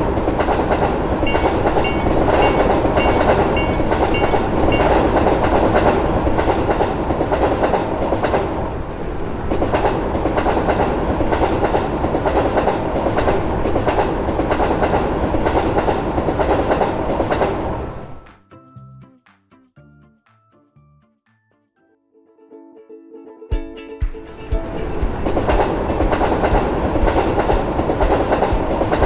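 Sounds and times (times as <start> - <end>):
wheels clattering over rail joints: 0.0 - 18.2, 24.3 - 29.0
electric train passing: 0.0 - 18.3, 24.3 - 29.0
level-crossing bell ringing: 1.2 - 6.4.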